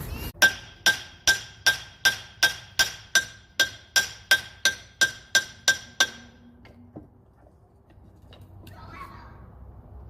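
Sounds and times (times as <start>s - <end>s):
hammer striking steel: 0.4s - 6.8s.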